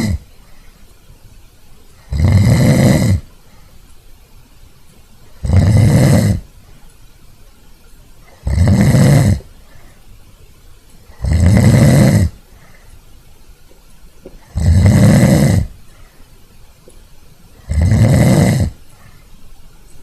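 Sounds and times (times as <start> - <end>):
person snoring loudly: 0.0 - 0.3, 2.0 - 3.3, 5.4 - 6.5, 8.3 - 9.5, 11.1 - 12.4, 14.4 - 15.8, 17.6 - 18.8
quiet breathing: 0.0 - 20.0.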